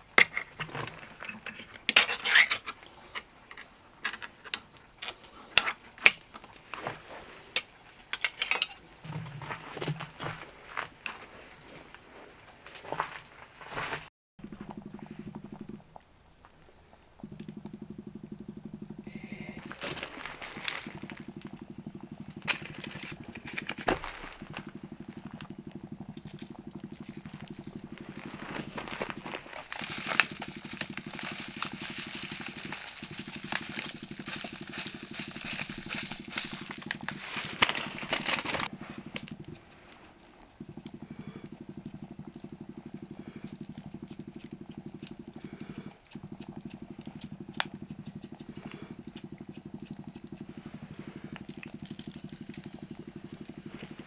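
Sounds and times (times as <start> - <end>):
steady low hum: 0.0 - 13.2, 14.4 - 54.0
campfire crackling and popping: 14.4 - 54.0
hissing: 14.4 - 54.0.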